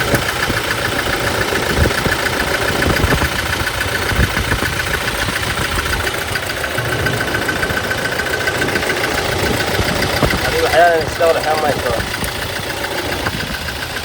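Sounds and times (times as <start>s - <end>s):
diesel engine idling unevenly: 0.0s - 14.0s.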